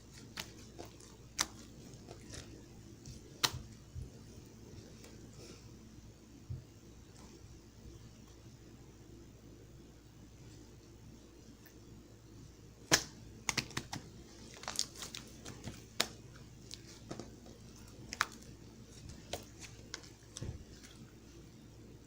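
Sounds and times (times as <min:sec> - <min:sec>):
slime clicking and popping: 0:12.9 - 0:16.2.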